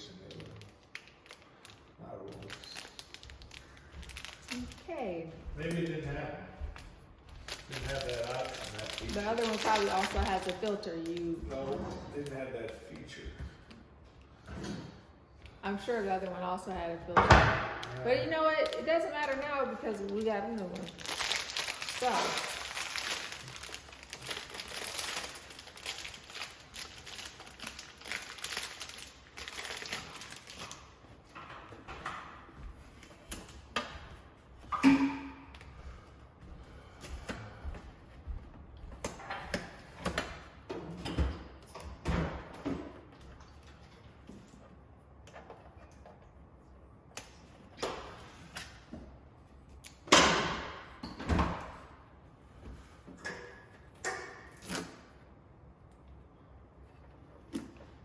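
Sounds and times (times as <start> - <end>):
packaging rustling and crinkling: 0.0 - 5.0, 6.8 - 13.2, 17.8 - 31.2.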